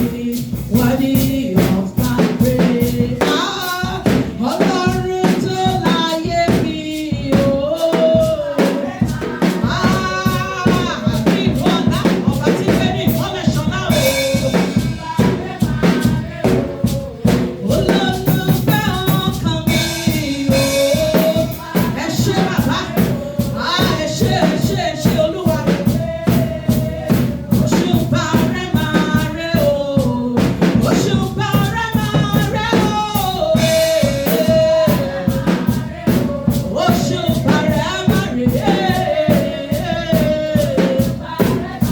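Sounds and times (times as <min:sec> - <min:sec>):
drum kit beat: 0:00.0 - 0:41.9
person singing a melody: 0:00.0 - 0:41.9.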